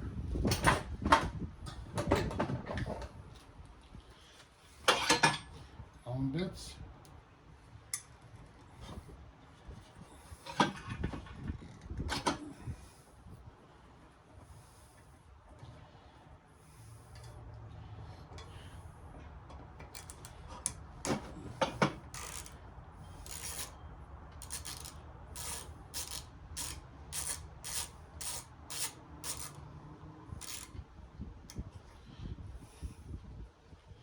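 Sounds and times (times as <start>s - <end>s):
hand tool rasping and clicking: 19.8s - 23.8s, 24.4s - 29.6s, 30.4s - 30.8s.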